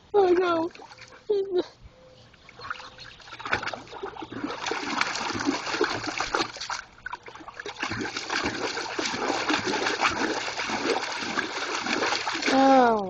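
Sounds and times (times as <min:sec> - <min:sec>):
dog splashing in water: 0:02.6 - 0:12.7.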